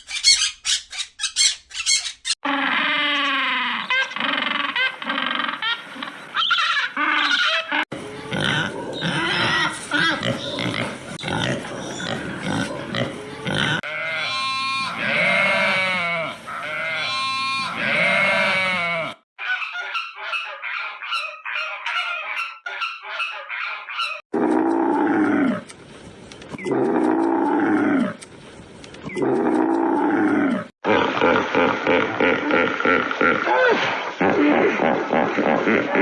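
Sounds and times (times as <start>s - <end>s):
animal drawn-out cries: 1.4s - 25.6s
farm animals calling: 3.2s - 25.5s.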